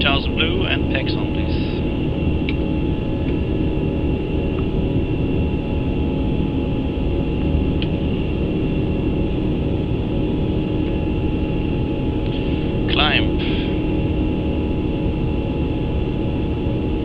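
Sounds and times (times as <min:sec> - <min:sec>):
faint steady whining tones: 0:00.0 - 0:17.0
rumble of airflow and aircraft systems: 0:00.0 - 0:17.0.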